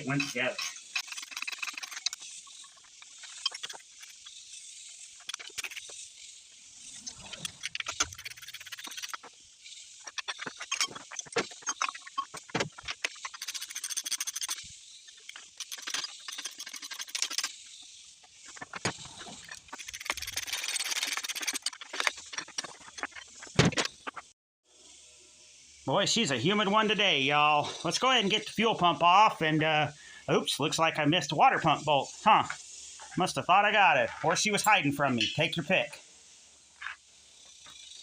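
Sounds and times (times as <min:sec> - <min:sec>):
insects buzzing: 0:00.0 - 0:38.0
ratchet clicking: 0:00.1 - 0:18.5, 0:19.6 - 0:23.4.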